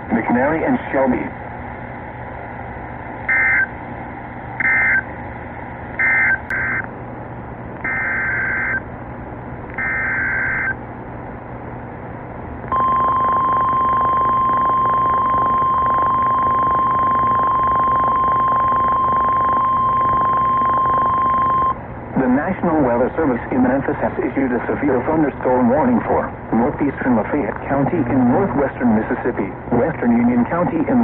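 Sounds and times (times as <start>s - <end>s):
steady alarm tone: 3.3s - 3.7s, 4.6s - 5.1s, 6.0s - 6.8s, 7.8s - 8.8s, 9.8s - 10.8s, 12.7s - 21.8s.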